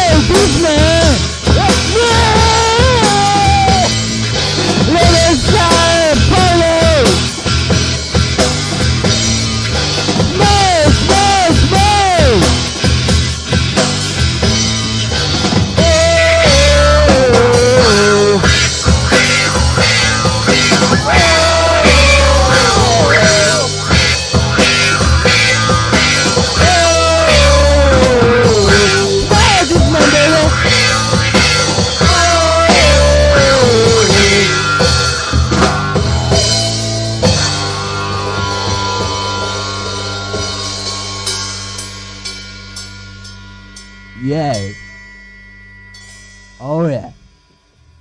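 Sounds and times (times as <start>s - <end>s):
rock band playing: 0.0s - 47.2s
lead melody sliding downward: 20.6s - 24.1s, 26.0s - 34.6s.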